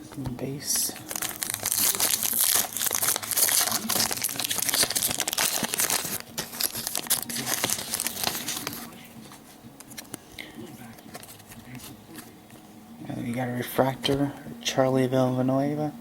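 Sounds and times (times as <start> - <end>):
foil wrapper crinkling: 0.7 - 12.6.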